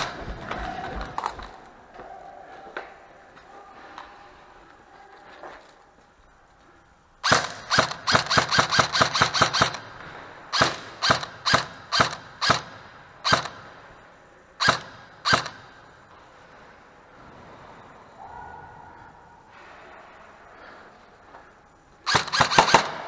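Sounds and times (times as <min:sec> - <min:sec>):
airsoft gun shots: 0:07.2 - 0:13.8, 0:14.6 - 0:15.9, 0:22.1 - 0:23.0.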